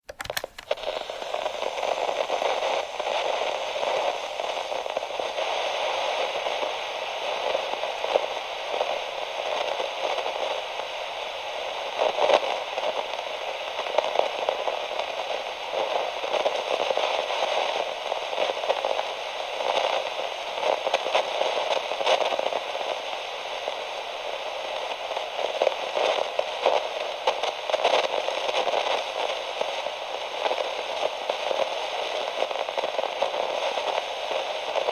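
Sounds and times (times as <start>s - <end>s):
radio static crackling: 0.1s - 15.4s.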